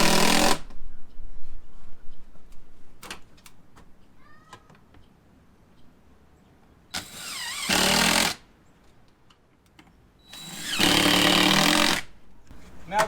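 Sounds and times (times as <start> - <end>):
power drill driving screws: 0.0 - 0.7, 6.9 - 8.4, 10.2 - 12.1.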